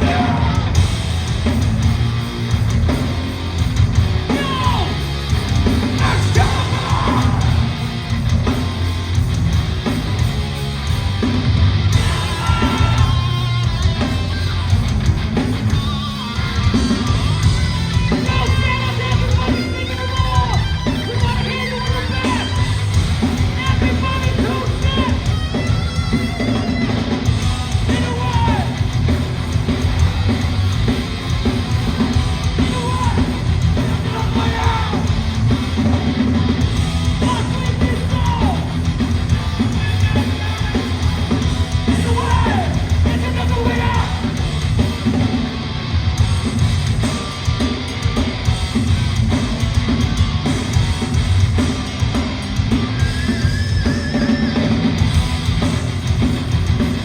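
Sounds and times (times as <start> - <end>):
person yelling vocals: 0.0 - 0.8, 4.3 - 5.0, 6.0 - 7.7, 12.0 - 13.4, 27.8 - 28.8, 32.6 - 33.4, 34.0 - 35.2, 37.2 - 38.8, 42.0 - 44.2
distorted guitars: 0.0 - 57.0
pounding drums: 0.0 - 57.0.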